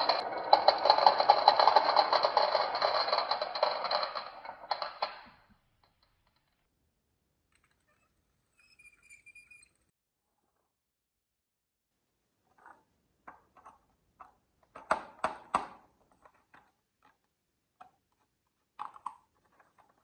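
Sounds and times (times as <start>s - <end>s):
marbles rattling down a track: 0.0s - 5.3s.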